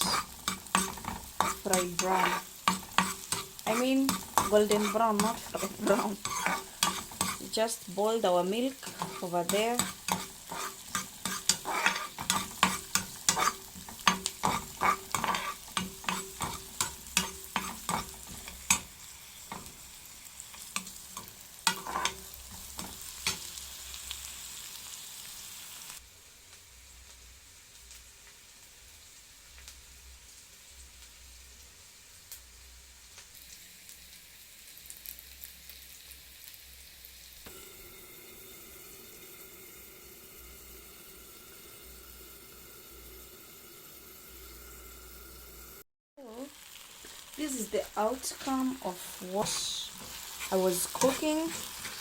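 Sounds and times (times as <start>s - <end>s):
spoon stirring and knocking a pan: 0.0s - 7.6s, 8.8s - 23.6s, 48.2s - 52.0s
food sizzling: 0.0s - 52.0s.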